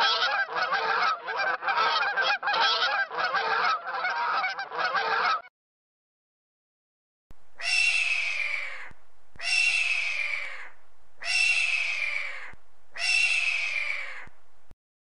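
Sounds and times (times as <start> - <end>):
animal call: 7.6 - 14.4.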